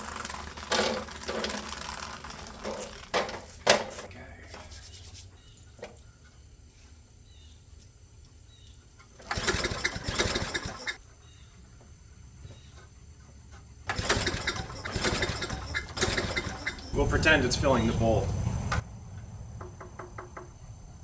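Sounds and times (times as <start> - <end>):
mower engine cranking: 0.0 - 4.1, 9.1 - 11.0, 13.9 - 18.8.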